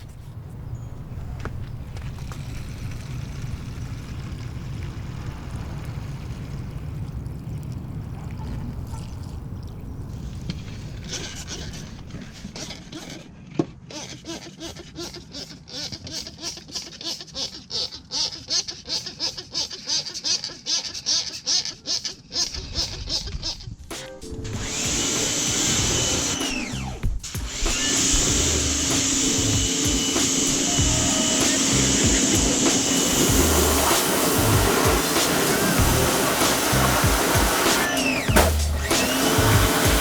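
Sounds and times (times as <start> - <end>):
pressure washer spraying: 24.6 - 40.0
background music with steady beat: 27.0 - 40.0.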